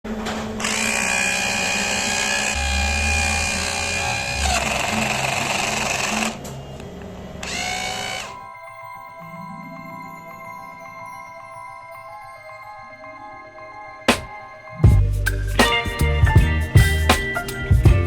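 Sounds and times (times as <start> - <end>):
small electric motor whirring: 7.4 - 8.4.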